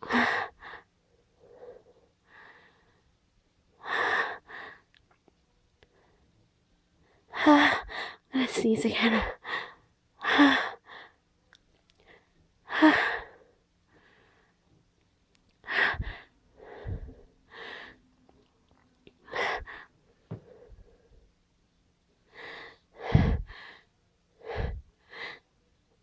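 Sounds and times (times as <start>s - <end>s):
sharp gasping breaths: 22.3s - 25.4s.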